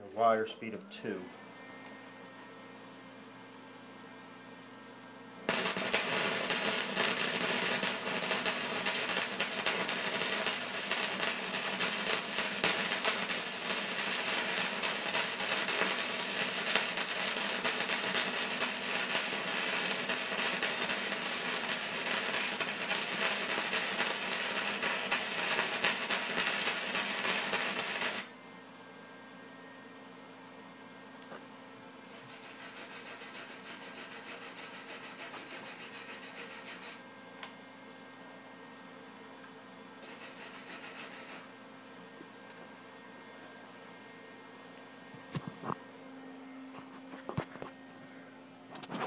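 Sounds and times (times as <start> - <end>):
welding arc crackling and sizzling: 5.5 - 28.3, 32.1 - 37.0, 40.0 - 41.5.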